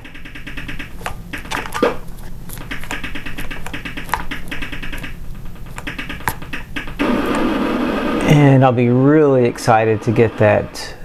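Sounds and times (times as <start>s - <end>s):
rapid electronic clicking: 0.0s - 10.6s.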